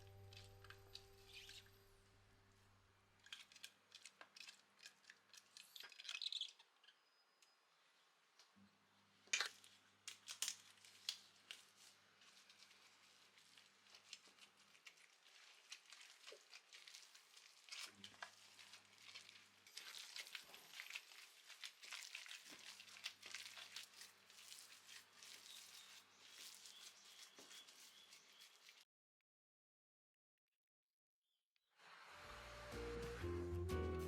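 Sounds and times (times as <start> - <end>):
small clicks and rustles: 3.2 - 7.6, 8.4 - 28.8.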